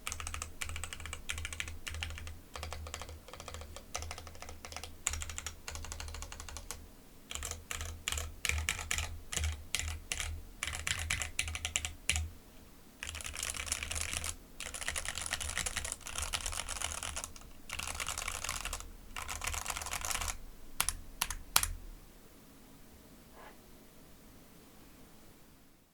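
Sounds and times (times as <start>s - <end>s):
mechanical keyboard typing: 0.0s - 12.3s, 13.0s - 21.8s.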